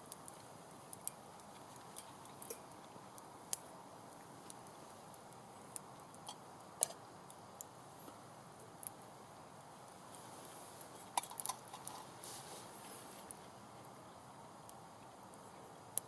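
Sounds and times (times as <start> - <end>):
faint steady hiss: 0.0 - 16.0
wood fire crackling and popping: 0.0 - 16.0.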